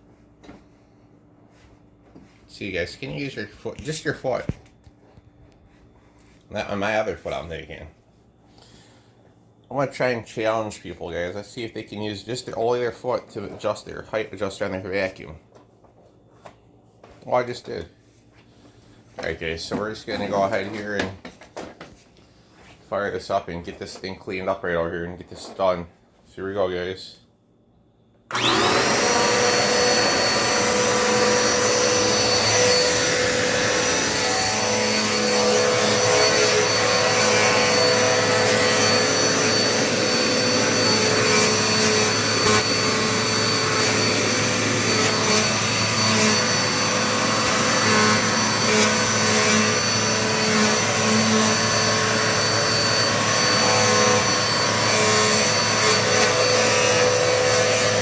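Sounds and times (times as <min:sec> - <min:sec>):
vacuum cleaner running: 0:28.3 - 0:58.0.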